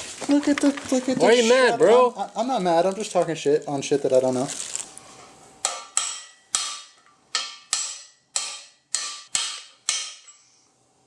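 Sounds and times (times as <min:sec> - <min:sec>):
hammer striking metal: 0:05.6 - 0:10.5.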